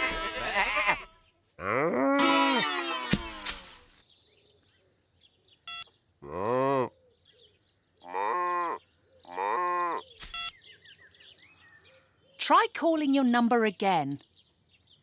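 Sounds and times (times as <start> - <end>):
cartoon cow mooing: 1.6 - 3.2, 6.2 - 6.9, 8.0 - 10.0.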